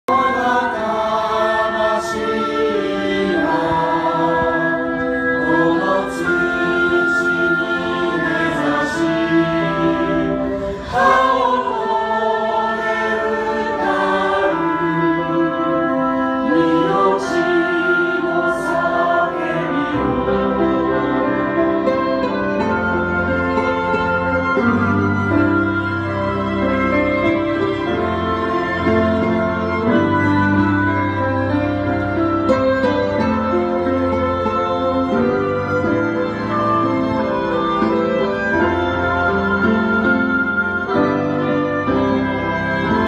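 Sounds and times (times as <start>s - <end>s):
choir singing: 0.1s - 43.0s.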